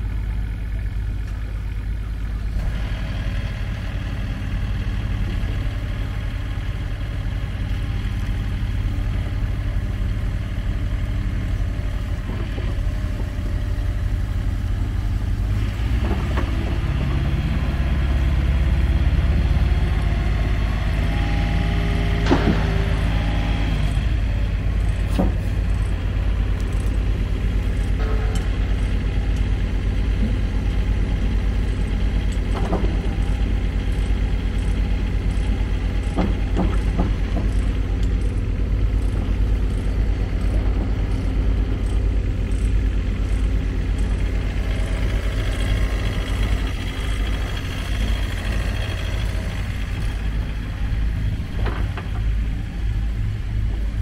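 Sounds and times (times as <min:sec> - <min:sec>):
excavator diesel engine running: 0:00.0 - 0:54.0
sharp knocks from machine: 0:22.2 - 0:23.0.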